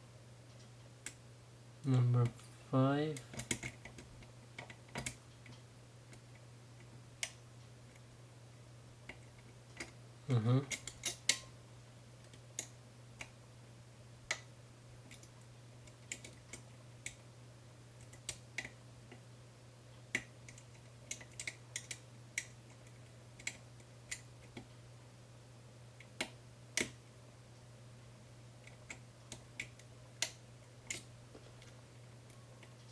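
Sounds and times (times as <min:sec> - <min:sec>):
steady low hum: 0:00.0 - 0:32.9.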